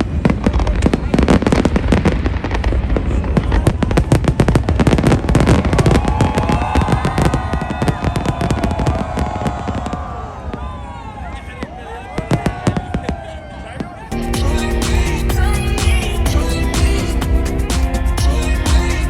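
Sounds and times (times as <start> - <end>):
fireworks bangs and crackles: 0.0 - 10.7.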